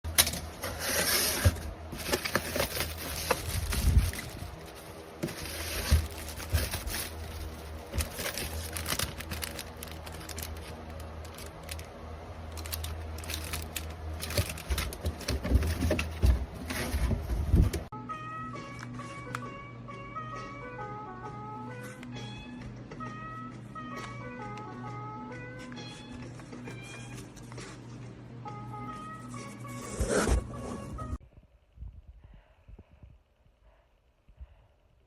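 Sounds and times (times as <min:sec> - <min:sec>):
packaging crinkling and tearing: 0:00.1 - 0:17.0.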